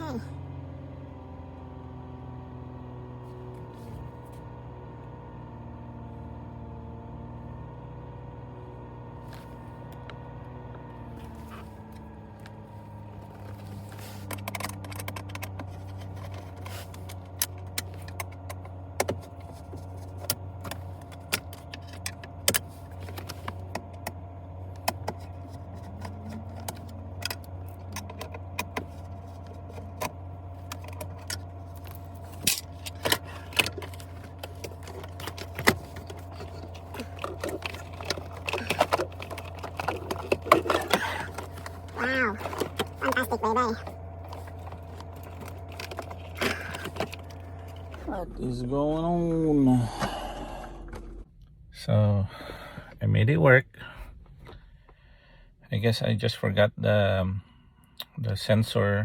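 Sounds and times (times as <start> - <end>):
car engine idling: 0.0 - 59.0
clicks and rattles of parts: 13.2 - 48.1.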